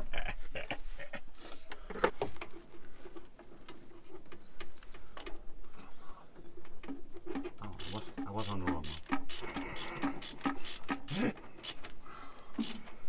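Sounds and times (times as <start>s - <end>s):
spanner clicking on bolt: 6.8s - 12.0s, 12.6s - 13.0s.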